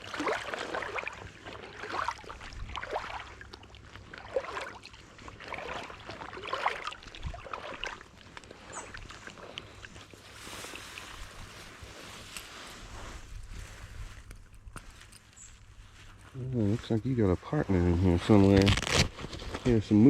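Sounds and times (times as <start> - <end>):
creek water splashing: 0.0 - 14.7.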